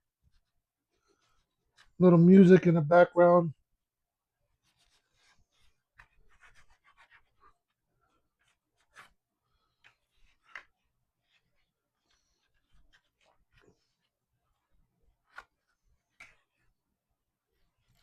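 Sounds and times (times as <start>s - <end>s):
hand scraping and rubbing leather: 4.5s - 16.8s.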